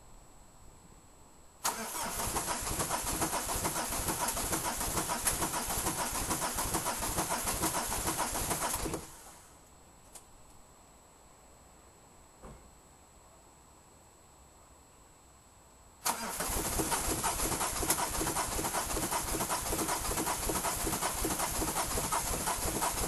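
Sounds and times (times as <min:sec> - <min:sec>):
starter motor cranking engine: 0:01.6 - 0:09.4, 0:16.0 - 0:23.0.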